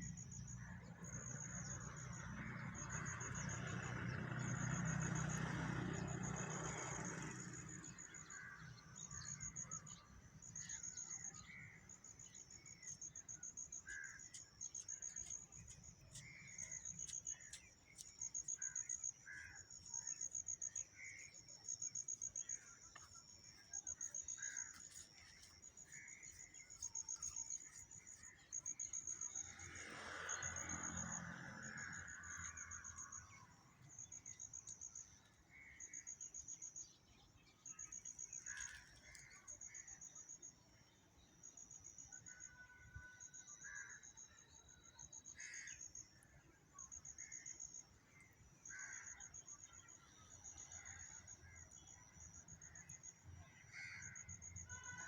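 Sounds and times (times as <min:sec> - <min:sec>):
insect chirping in pulsed bursts: 0:00.0 - 0:36.9.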